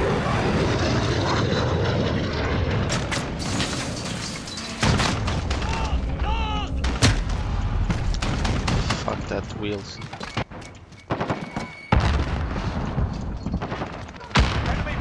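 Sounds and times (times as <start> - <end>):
aircraft drone: 0.0 - 4.8
gunshots: 6.8 - 9.4, 10.3 - 15.0
explosion: 12.0 - 15.0.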